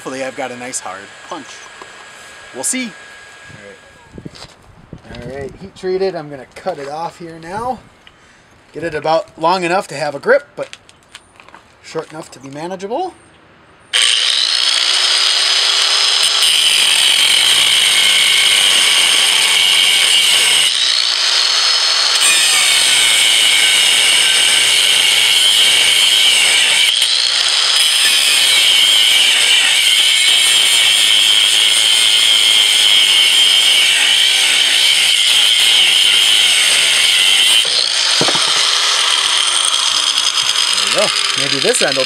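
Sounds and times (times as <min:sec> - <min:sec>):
power tool grinding steel: 0:00.0 - 0:03.9, 0:14.0 - 0:42.0.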